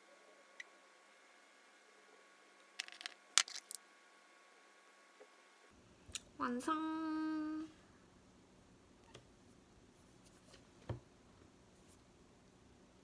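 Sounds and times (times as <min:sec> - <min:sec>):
woman's sing-song exclamation: 0:06.4 - 0:07.8.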